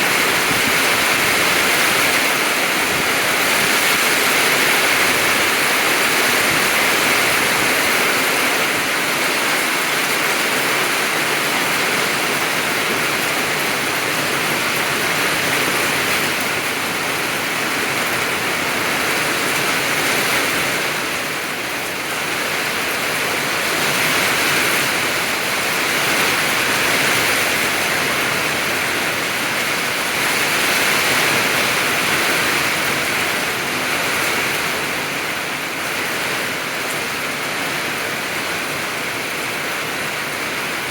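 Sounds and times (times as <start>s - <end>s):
heavy rain pouring: 0.0s - 40.9s.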